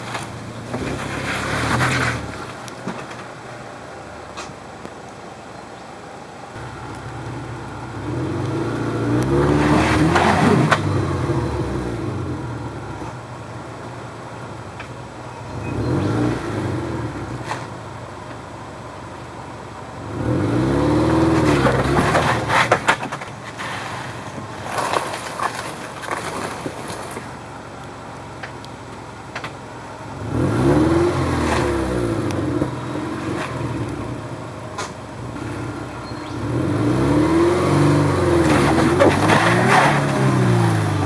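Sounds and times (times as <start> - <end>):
car engine revving: 0.0 - 5.5, 6.1 - 41.0.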